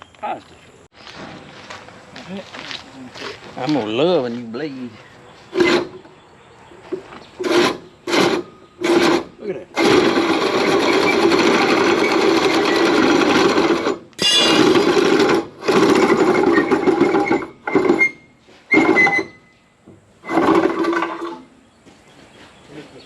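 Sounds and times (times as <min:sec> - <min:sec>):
power tool bursts: 0:07.4 - 0:19.4.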